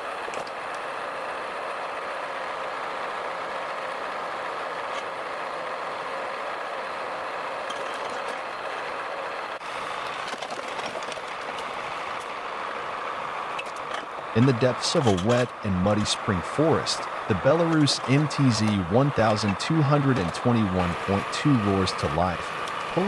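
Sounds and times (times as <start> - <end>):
heavy logging machine running: 0.0 - 23.0
knocks and clanks: 13.6 - 15.5.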